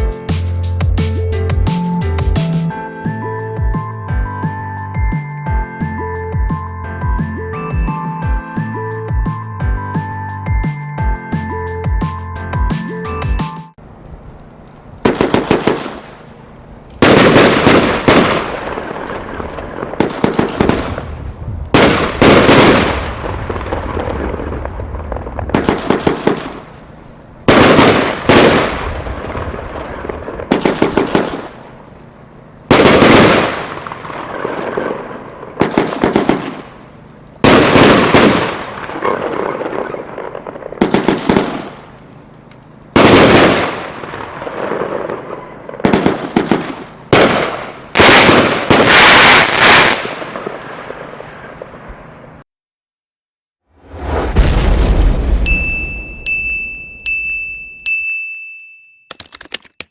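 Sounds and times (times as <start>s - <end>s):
firework crackle: 13.9s - 52.0s, 53.7s - 56.1s
firework volleys banging: 14.8s - 31.9s, 32.6s - 42.1s, 42.9s - 51.9s.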